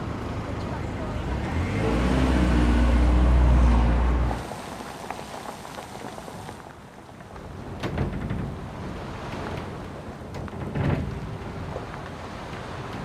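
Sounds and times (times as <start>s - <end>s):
car engine rumbling: 0.0s - 13.0s
steady rain: 0.0s - 13.0s.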